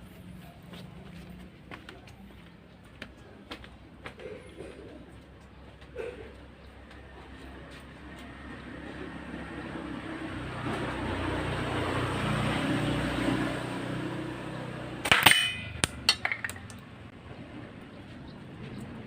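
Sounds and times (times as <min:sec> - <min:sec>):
sharp metal clank with ring: 0:15.0 - 0:15.9.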